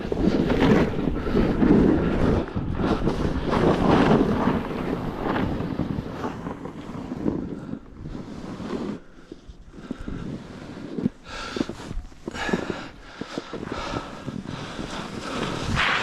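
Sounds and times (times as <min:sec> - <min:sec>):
wind buffeting microphone: 0:00.0 - 0:16.0.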